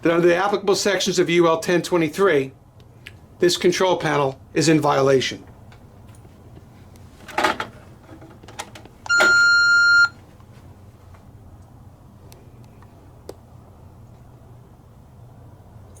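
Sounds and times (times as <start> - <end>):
electronic beep: 9.1 - 10.2.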